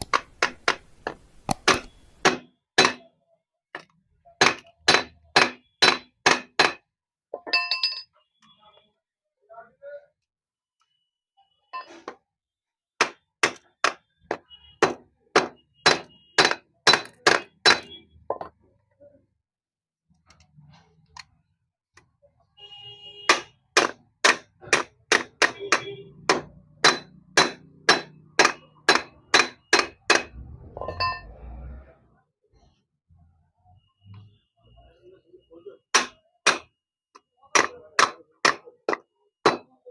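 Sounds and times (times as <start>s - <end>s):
hammer striking rivets: 0.0s - 3.1s, 3.8s - 6.8s, 13.0s - 18.0s, 23.3s - 30.4s, 35.9s - 36.7s, 37.5s - 39.8s.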